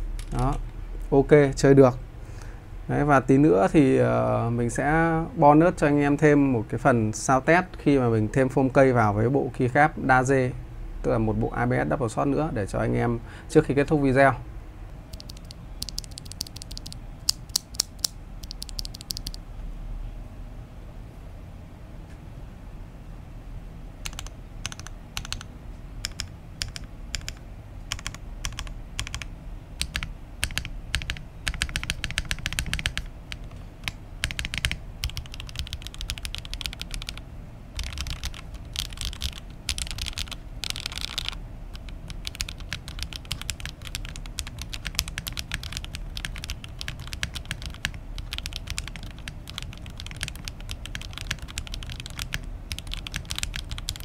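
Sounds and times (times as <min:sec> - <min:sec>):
mechanical keyboard key clacks: 0:15.1 - 0:19.4, 0:24.0 - 0:25.4, 0:26.0 - 0:37.2, 0:37.8 - 0:54.0.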